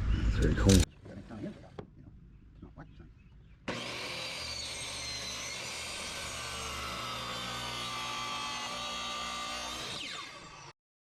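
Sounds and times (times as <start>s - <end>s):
power tool cutting wood: 3.7s - 10.8s.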